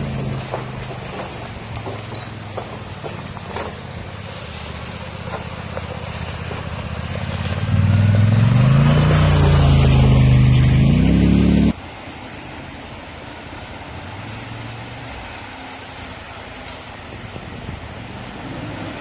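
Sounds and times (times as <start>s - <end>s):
atv engine revving: 0.0s - 3.8s, 5.2s - 11.8s.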